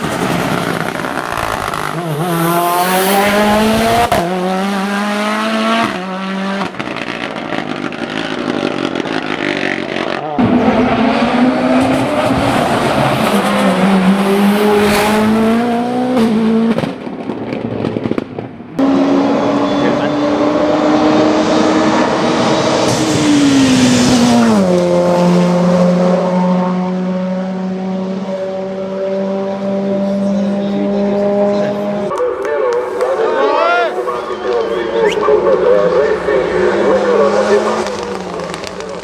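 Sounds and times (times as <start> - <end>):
car engine at full throttle: 0.0 - 39.0.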